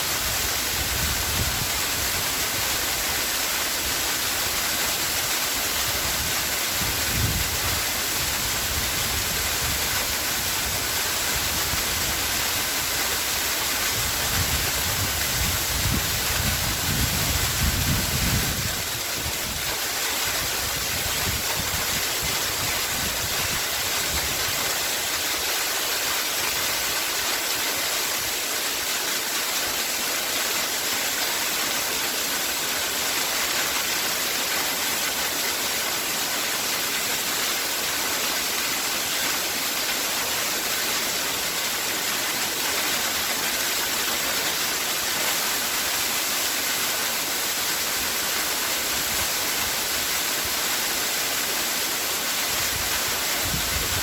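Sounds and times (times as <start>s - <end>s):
waterfall splashing: 0.0s - 54.0s.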